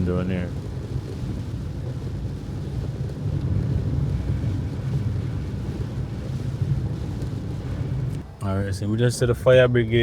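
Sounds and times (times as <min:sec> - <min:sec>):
car driving rumble: 0:00.0 - 0:10.0
wind and rain on car: 0:00.0 - 0:10.0.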